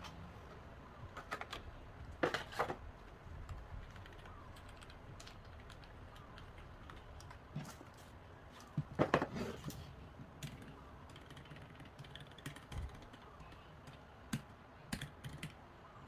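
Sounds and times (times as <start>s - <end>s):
mechanical keyboard typing: 3.4s - 7.5s, 10.4s - 15.6s.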